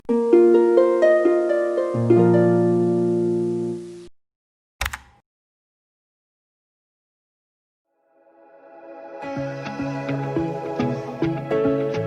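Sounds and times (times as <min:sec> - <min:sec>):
plucked harp-like music: 0:00.1 - 0:03.8.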